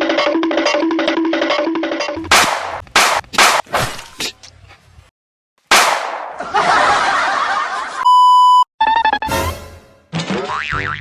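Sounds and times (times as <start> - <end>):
sharp whooshes and hits: 2.2 - 4.1
loud steady beep: 8.0 - 8.7.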